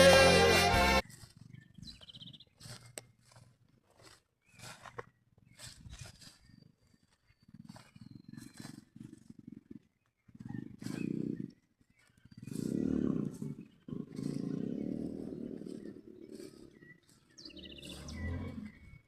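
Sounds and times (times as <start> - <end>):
animal roaring: 10.4 - 11.6, 12.3 - 19.0.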